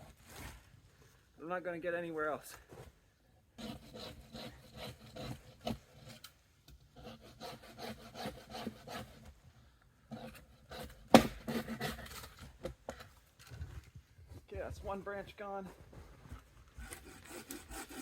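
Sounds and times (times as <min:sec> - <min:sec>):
hand saw cutting branch: 0:03.6 - 0:09.3, 0:10.1 - 0:13.0, 0:16.7 - 0:18.0.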